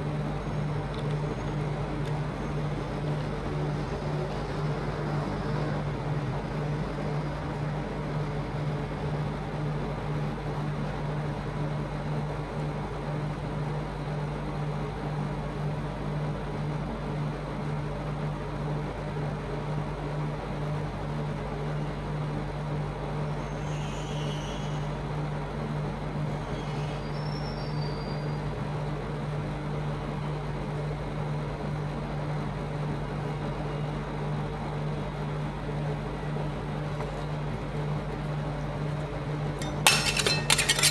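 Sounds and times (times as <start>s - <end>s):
low machine hum: 0.0s - 12.4s, 32.9s - 40.9s
faint light clinks: 39.6s - 40.9s.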